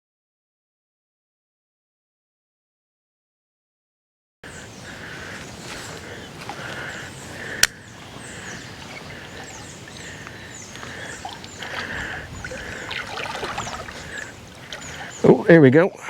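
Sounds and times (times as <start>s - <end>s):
outdoor background noise: 4.4s - 16.0s
small birds chirping: 4.4s - 16.0s.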